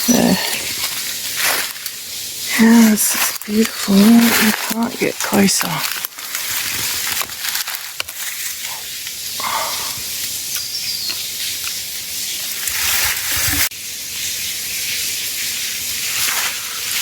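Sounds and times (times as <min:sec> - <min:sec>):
waterfall rushing: 0:00.0 - 0:06.0, 0:09.4 - 0:10.5
rustling handling noise: 0:00.0 - 0:13.7, 0:15.5 - 0:17.0.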